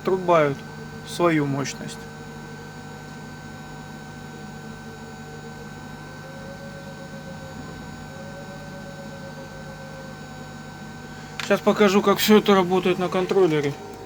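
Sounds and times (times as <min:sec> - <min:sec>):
electrical hum and whine: 0:00.0 - 0:14.0
faint tone drifting in pitch: 0:05.4 - 0:11.1.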